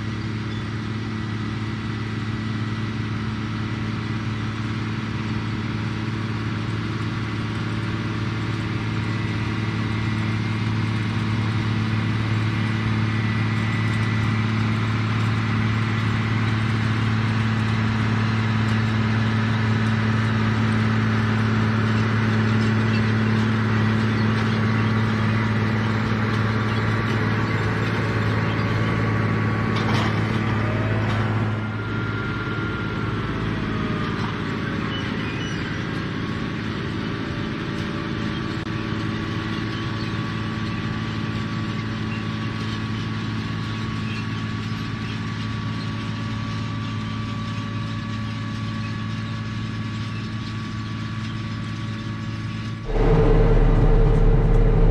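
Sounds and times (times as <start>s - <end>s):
tractor diesel engine running: 0.0s - 54.9s
faint gliding whine: 52.8s - 54.9s.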